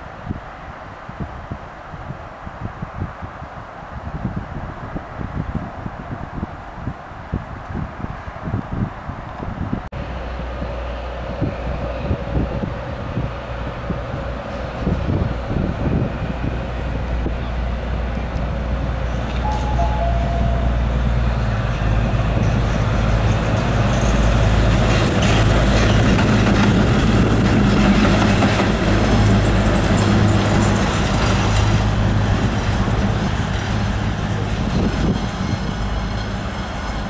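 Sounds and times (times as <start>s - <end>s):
train wheels rumbling on rail: 4.1s - 37.0s
low hum: 19.4s - 22.2s.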